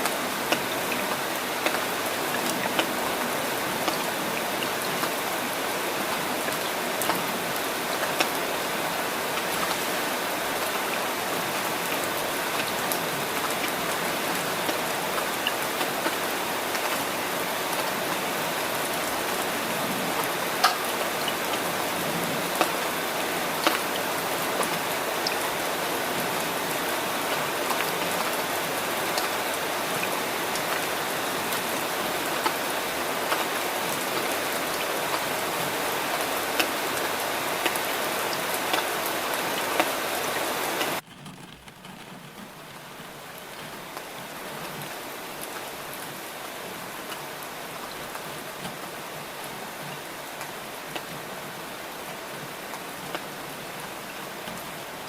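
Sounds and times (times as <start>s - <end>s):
steady rain falling: 0.0s - 55.0s
sharp raindrop taps: 40.9s - 55.0s.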